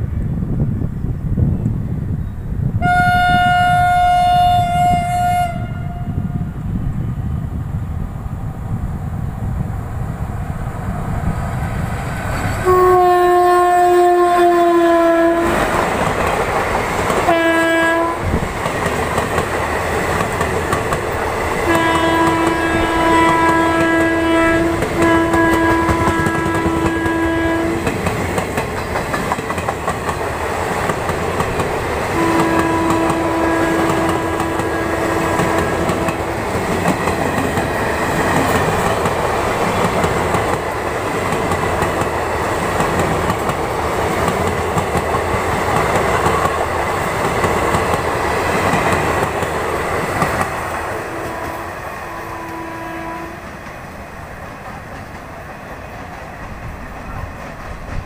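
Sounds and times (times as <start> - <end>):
train clatter and rumble: 0.0 - 58.0
locomotive air horn blasts: 2.8 - 6.4, 12.6 - 15.6, 17.3 - 18.3, 21.6 - 27.9, 32.1 - 36.3, 50.9 - 53.5.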